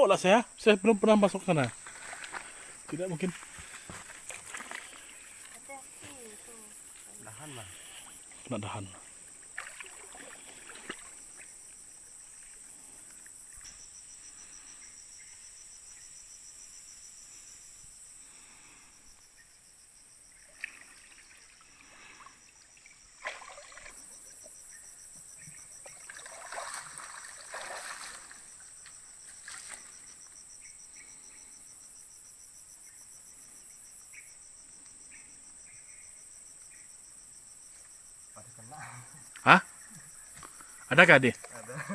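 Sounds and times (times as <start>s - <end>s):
insects trilling: 0.0s - 41.9s
splashy noises: 9.6s - 11.3s, 23.2s - 24.0s, 26.0s - 28.5s.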